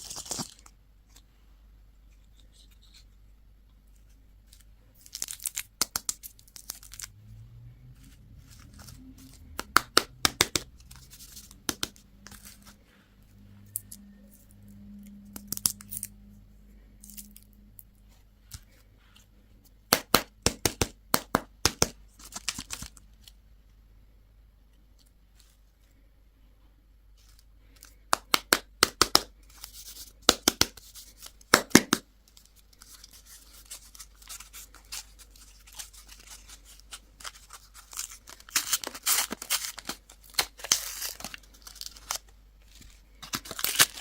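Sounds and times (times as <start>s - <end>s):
candy wrapper crinkling: 0.0s - 1.2s, 4.4s - 7.1s, 8.0s - 12.8s, 15.2s - 16.1s, 20.0s - 23.3s, 27.2s - 44.0s.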